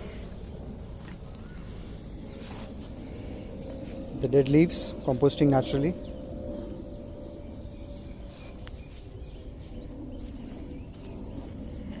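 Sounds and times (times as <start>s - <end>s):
faint steady hum: 0.0s - 12.0s
low rumble: 0.0s - 12.0s
faint bird chirps: 1.2s - 2.6s.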